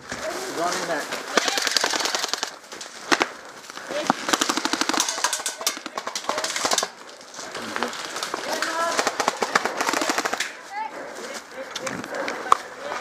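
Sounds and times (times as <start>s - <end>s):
airsoft guns firing: 1.3s - 7.0s, 8.2s - 10.6s.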